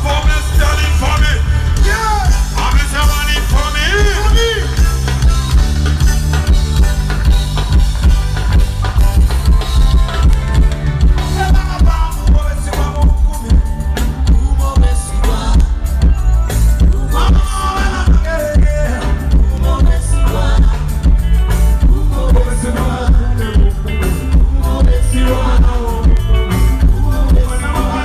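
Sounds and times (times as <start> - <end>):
drum kit beat: 0.0 - 28.0
heavy bass line: 0.0 - 28.0.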